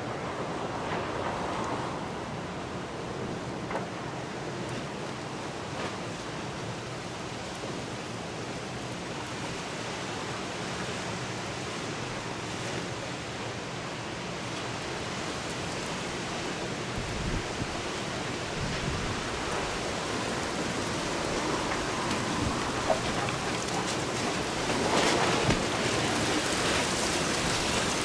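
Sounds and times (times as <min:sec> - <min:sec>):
strong gusty wind rushing: 0:16.8 - 0:28.0.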